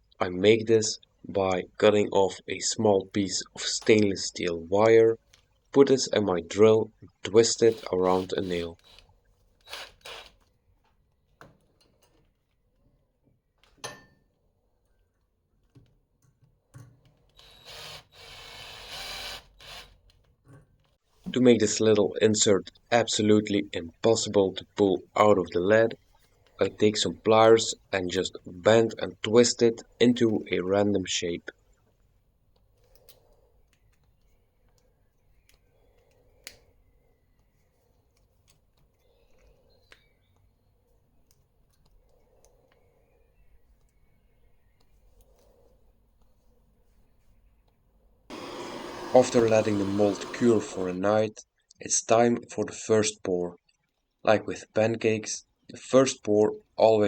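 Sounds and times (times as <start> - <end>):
drill running: 9.6 - 10.4, 17.4 - 20.0, 48.3 - 51.0.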